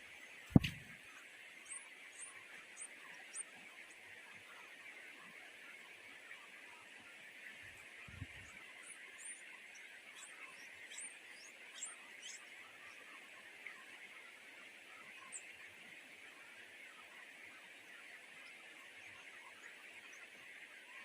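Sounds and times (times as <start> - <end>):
steady outdoor hiss: 0.0 - 21.0
low thump: 0.5 - 0.8.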